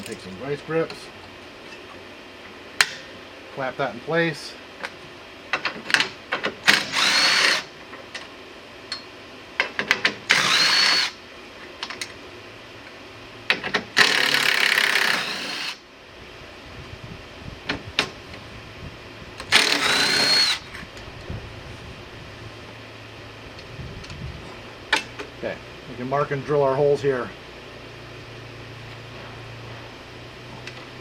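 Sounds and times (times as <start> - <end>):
power drill whining: 6.7 - 7.7, 10.3 - 11.2, 14.0 - 15.8, 19.4 - 20.7.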